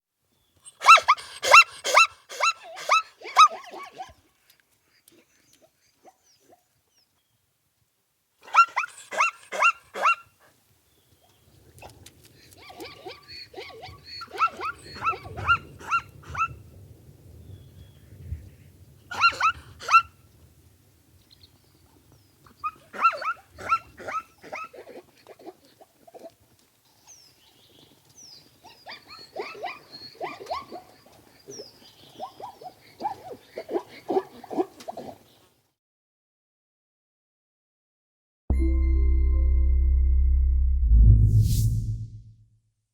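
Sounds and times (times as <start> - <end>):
low rumble: 38.5 - 42.4.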